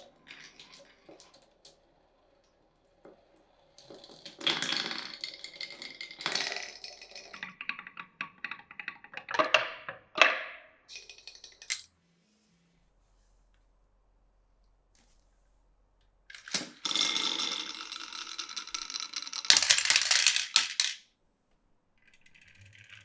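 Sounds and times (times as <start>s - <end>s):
marbles rolling down wooden run: 0.2s - 2.1s, 3.0s - 10.3s, 16.3s - 21.0s.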